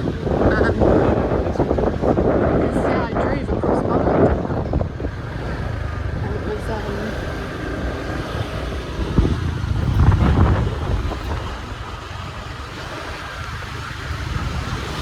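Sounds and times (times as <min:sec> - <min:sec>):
scooter engine running: 0:00.0 - 0:15.0
wind buffeting microphone: 0:00.0 - 0:15.0.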